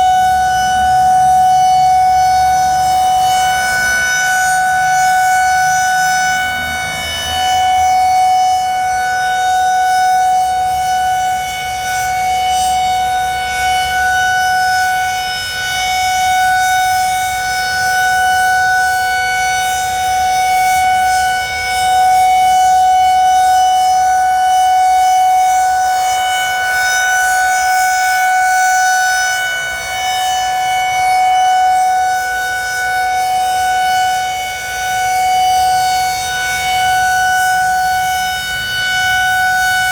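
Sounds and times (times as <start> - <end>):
rotating warning siren: 0.0 - 39.9.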